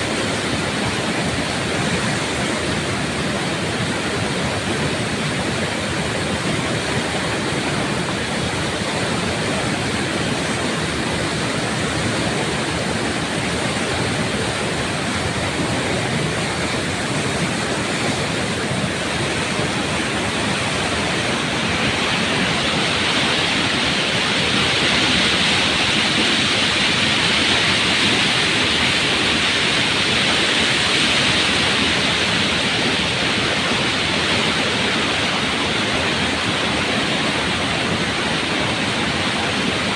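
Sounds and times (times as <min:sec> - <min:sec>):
floodwater rushing: 0:00.0 - 0:39.9.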